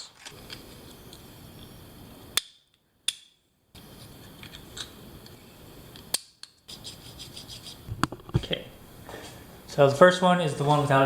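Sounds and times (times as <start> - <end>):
steady low hiss: 0.0 - 11.0.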